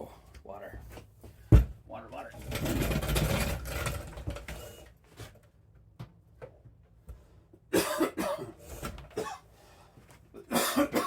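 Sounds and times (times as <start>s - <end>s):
man coughing: 7.7s - 8.6s, 9.2s - 9.4s, 10.4s - 11.0s.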